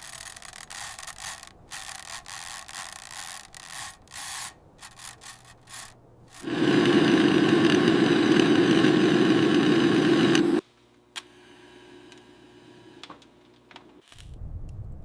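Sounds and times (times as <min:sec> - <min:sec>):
engine running: 0:06.4 - 0:10.6.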